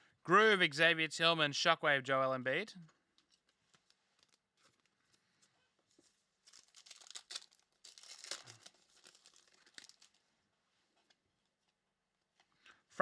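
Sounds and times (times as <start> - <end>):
foil pack tearing and crinkling: 6.4 - 10.2.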